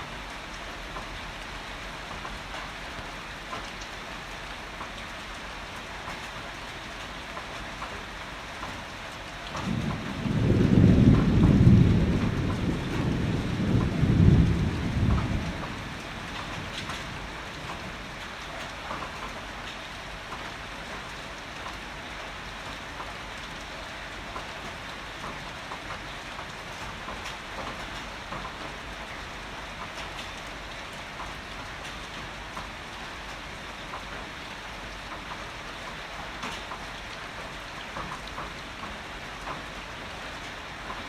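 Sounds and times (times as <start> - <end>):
heavy rain: 0.0 - 41.0
thunder rumbling: 9.6 - 18.2.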